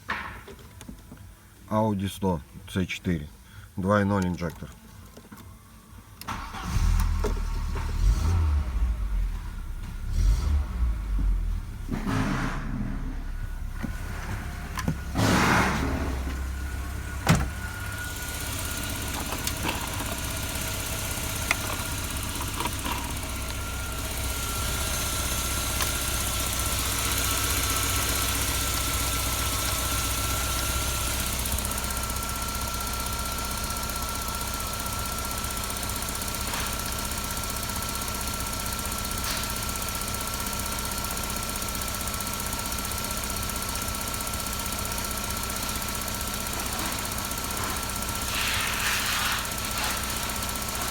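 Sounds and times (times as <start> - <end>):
car engine starting and idling: 3.9 - 50.9.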